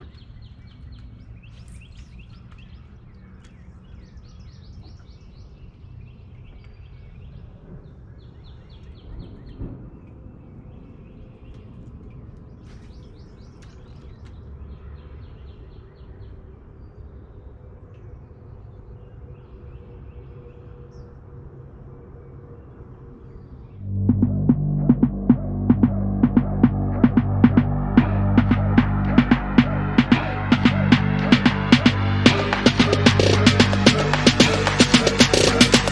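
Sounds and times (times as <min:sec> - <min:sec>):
songbirds trilling and chirping: 0:00.0 - 0:23.9
low background rumble: 0:23.8 - 0:35.9.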